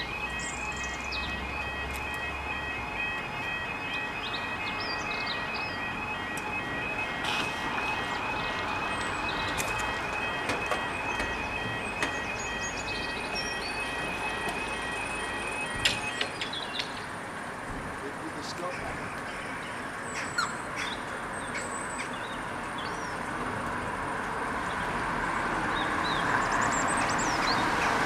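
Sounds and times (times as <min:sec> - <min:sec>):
pulsing electronic warning alarm: 0:00.0 - 0:17.3.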